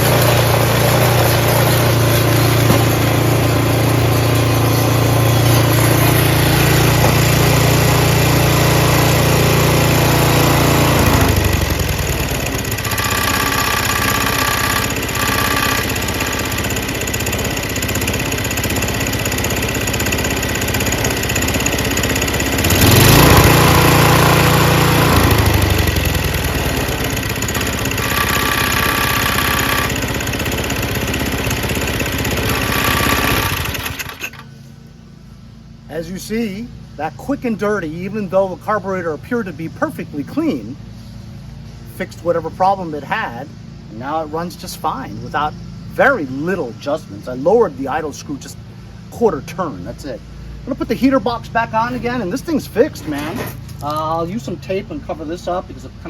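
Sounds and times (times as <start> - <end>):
small engine running: 0.0 - 34.7.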